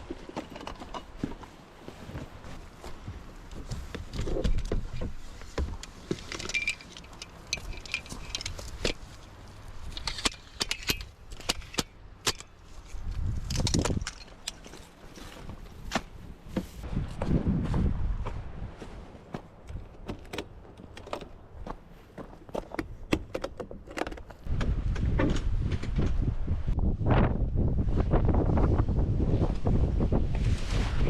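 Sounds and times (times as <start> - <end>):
small clicks and clinks of handling: 5.8 - 9.1
wind buffeting microphone: 13.0 - 14.2, 16.8 - 19.0, 24.4 - 31.0.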